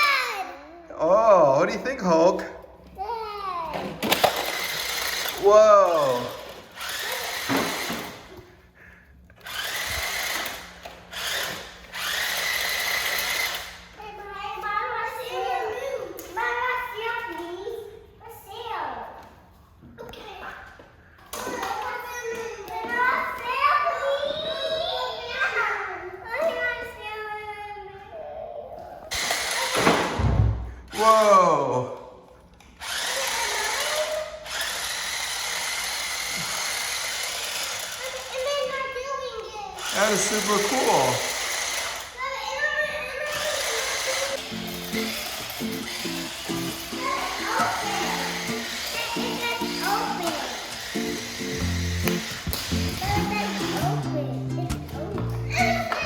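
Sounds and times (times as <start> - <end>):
toy car electric motor whirring: 4.0 - 8.4, 9.3 - 14.0, 29.1 - 30.0, 32.6 - 39.0, 39.7 - 54.0.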